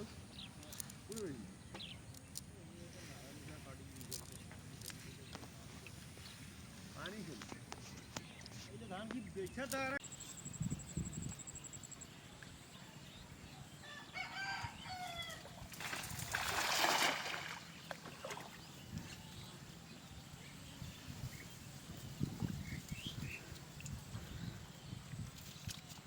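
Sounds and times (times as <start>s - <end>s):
rooster crowing: 13.8s - 15.5s.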